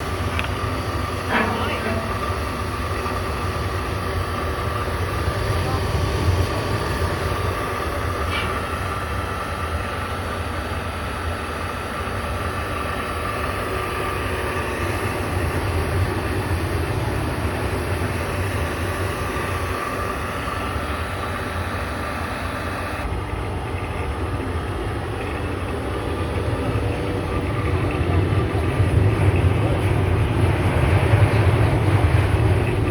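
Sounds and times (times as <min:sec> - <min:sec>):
low mechanical rumble: 0:00.0 - 0:32.9
faint high whine: 0:10.5 - 0:25.8.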